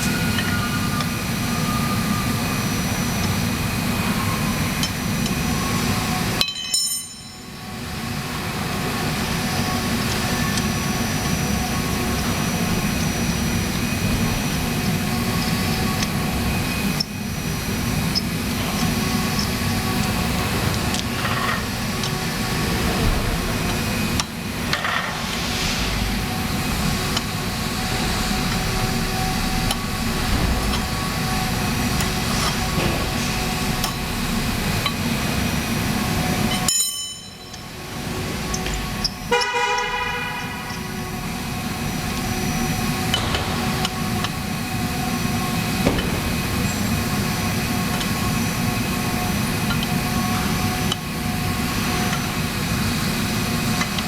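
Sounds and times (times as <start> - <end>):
low traffic-like rumble: 8.1 - 36.4, 37.8 - 50.2.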